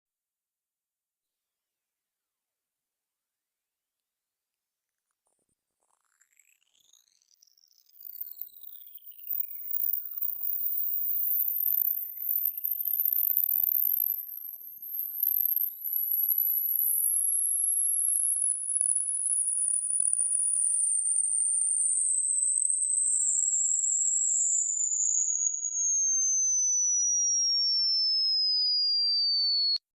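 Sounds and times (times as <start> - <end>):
high-pitched tone sweeping downward: 23.2 - 29.8.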